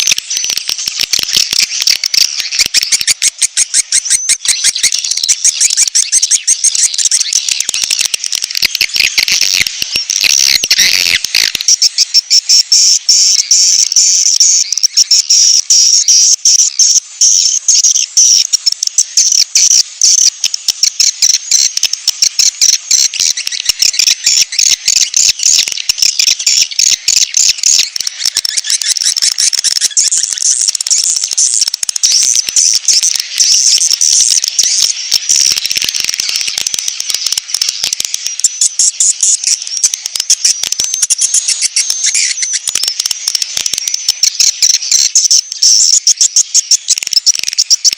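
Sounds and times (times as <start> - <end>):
rapid high-pitched bird chirps: 0.0 - 47.9.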